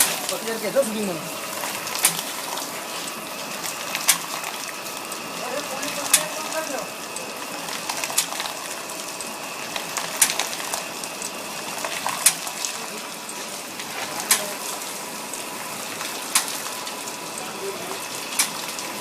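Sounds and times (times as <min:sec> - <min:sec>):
sharp machine clicks: 0:02.0 - 0:02.3, 0:04.0 - 0:04.3, 0:06.0 - 0:06.4, 0:08.0 - 0:08.4, 0:09.8 - 0:10.6, 0:12.0 - 0:12.4, 0:14.2 - 0:14.5, 0:16.3 - 0:16.7, 0:18.3 - 0:18.7.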